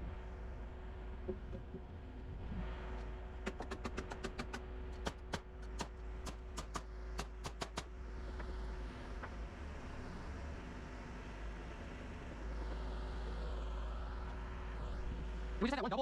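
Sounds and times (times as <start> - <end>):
low rumble: 0.0 - 6.2
steady hum: 0.0 - 16.0.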